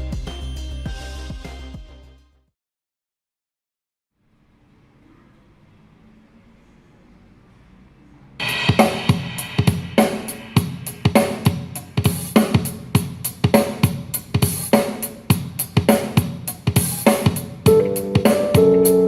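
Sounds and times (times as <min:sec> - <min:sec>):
drum kit beat: 0:00.0 - 0:02.0, 0:08.4 - 0:19.0.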